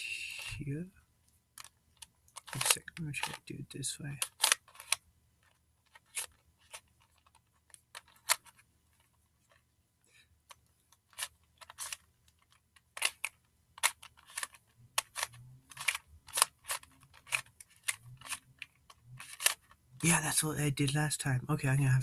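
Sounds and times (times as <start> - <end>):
plastic puzzle clicking: 1.6 - 3.5, 4.1 - 9.7, 10.4 - 19.8.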